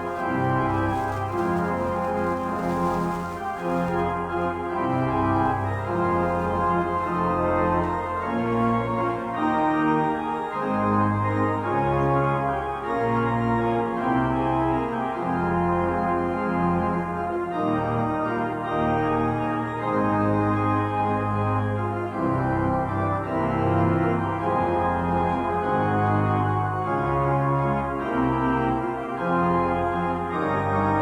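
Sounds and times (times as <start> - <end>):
church organ chords: 0.0 - 31.0.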